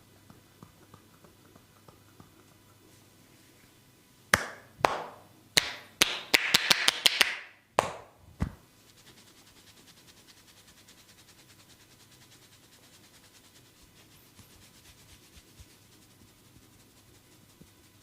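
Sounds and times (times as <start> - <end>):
hands slapping a body: 4.3 - 8.6.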